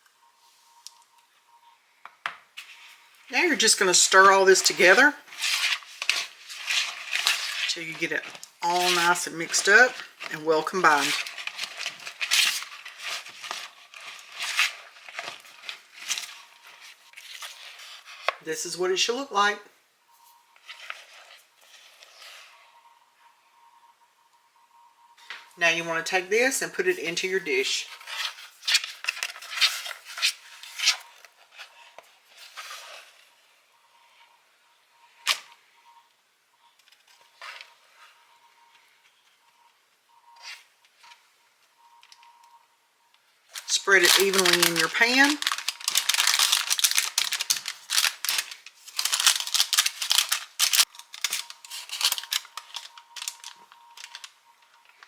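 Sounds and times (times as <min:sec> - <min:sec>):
stirring thick mixture in bowl: 0:03.3 - 0:18.4, 0:20.6 - 0:22.8.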